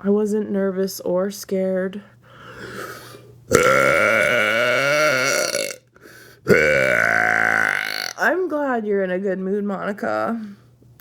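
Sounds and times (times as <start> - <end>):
woman burping: 3.5 - 5.8, 6.5 - 8.3.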